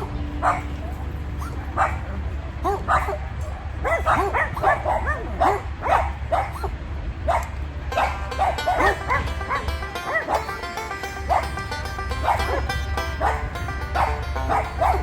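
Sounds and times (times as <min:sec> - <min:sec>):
background music: 0:00.0 - 0:03.0, 0:07.9 - 0:15.0
puppies yipping and whimpering: 0:00.0 - 0:03.2, 0:08.0 - 0:10.3.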